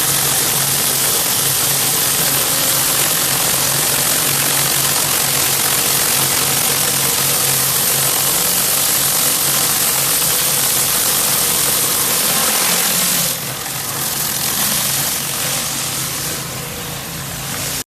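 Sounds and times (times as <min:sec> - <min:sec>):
high-pressure water spray hiss: 0:00.0 - 0:17.8.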